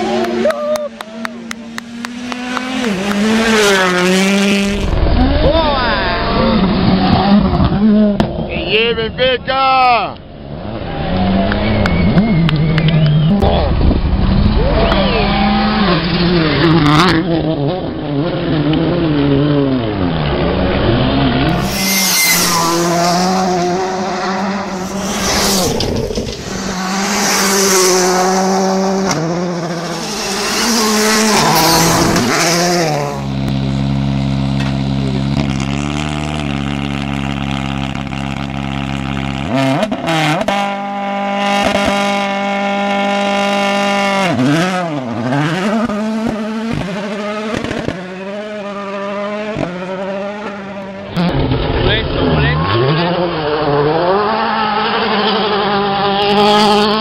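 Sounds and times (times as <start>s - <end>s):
rally car engines revving: 0.0s - 57.0s.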